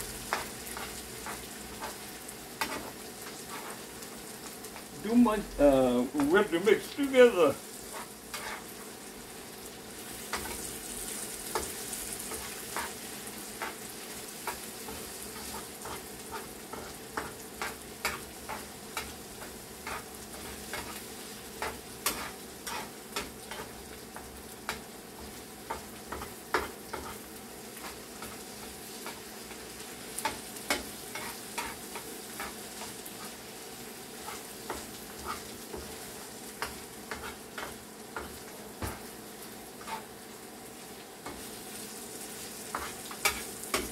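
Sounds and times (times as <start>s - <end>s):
chicken sizzling in a frying pan: 0.0s - 43.9s
utensil tapping and scraping pan: 2.6s - 3.8s, 7.9s - 8.7s, 12.3s - 13.0s, 14.4s - 21.0s, 21.6s - 27.2s, 30.2s - 33.4s, 36.6s - 39.1s, 39.8s - 40.1s, 42.7s - 43.9s.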